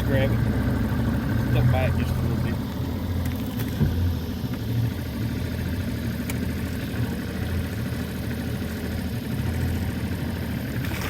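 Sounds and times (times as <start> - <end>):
outboard motor idling: 0.0 - 11.0.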